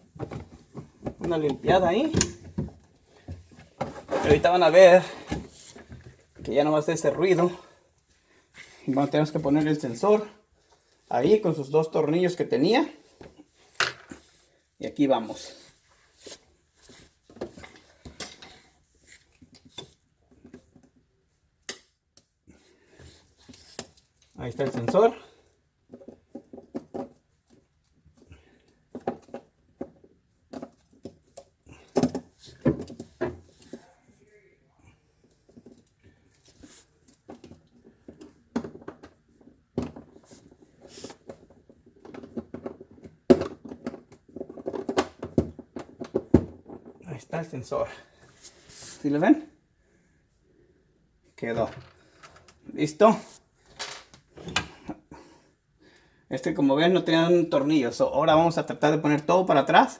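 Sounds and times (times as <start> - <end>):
plastic parts clicking and knocking: 25.8 - 33.8, 35.4 - 40.6, 41.2 - 47.0, 51.6 - 52.6, 53.6 - 54.9.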